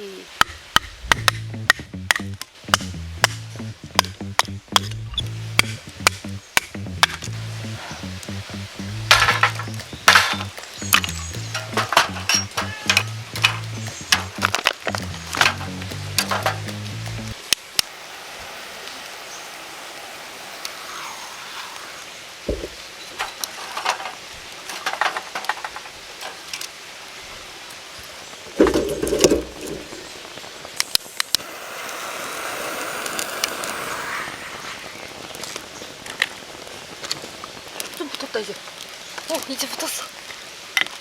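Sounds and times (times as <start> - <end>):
steady hiss: 0.0 - 41.0
kindling clicks and knocks: 9.0 - 17.9
thump: 22.5 - 22.8.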